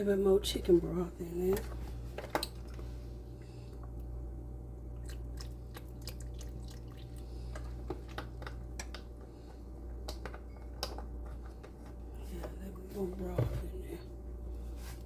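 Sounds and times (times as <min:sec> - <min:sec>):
steady low hum: 0:00.0 - 0:15.0
broth pouring splashes: 0:05.0 - 0:07.5.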